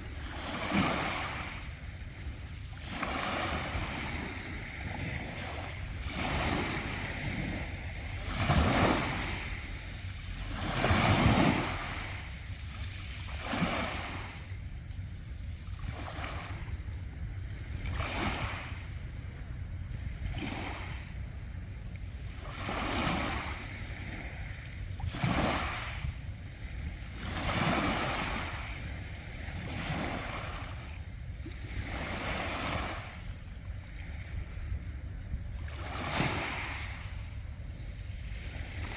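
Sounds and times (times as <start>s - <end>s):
steady low rumble: 0.0s - 38.9s
waves washing onto pebbles: 2.8s - 14.5s, 35.8s - 37.1s.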